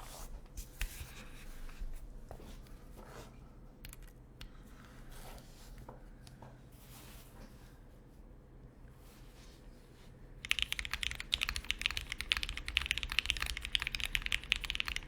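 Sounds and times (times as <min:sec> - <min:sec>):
mechanical keyboard keystrokes: 0:10.4 - 0:15.0.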